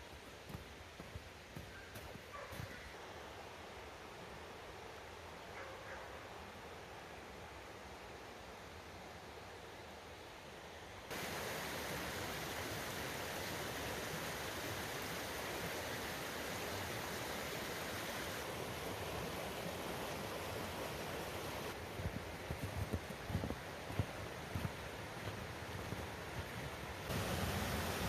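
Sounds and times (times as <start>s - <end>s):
waterfall rushing: 11.1s - 21.8s, 27.1s - 28.0s.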